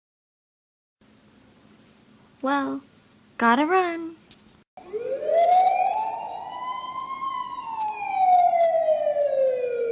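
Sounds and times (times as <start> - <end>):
siren wailing: 4.8 - 9.9.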